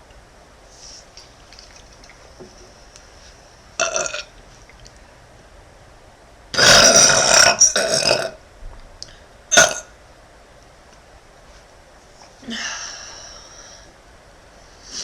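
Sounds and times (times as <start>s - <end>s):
woman burping: 6.6s - 8.4s.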